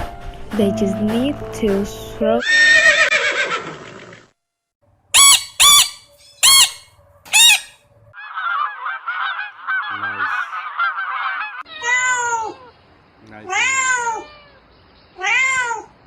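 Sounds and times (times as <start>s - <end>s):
loud bird calls: 5.2s - 16.0s
flock of birds calling: 7.4s - 11.7s.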